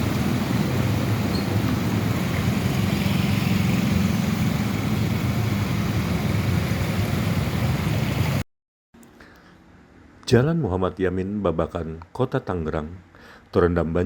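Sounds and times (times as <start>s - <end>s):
car engines at low speed: 0.0s - 8.4s
steady rushing water: 0.0s - 8.4s.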